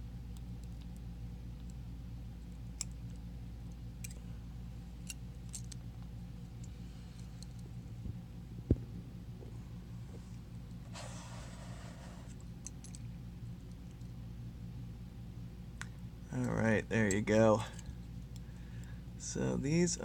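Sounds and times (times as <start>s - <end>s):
steady low hum: 0.0s - 20.0s
small metal parts clicking: 2.5s - 4.2s, 5.0s - 5.9s, 12.6s - 14.1s.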